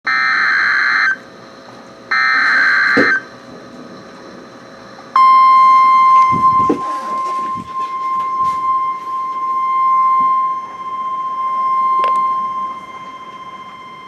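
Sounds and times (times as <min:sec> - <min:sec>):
warning alarm tone: 0:00.1 - 0:01.2, 0:02.1 - 0:03.3, 0:05.1 - 0:14.0.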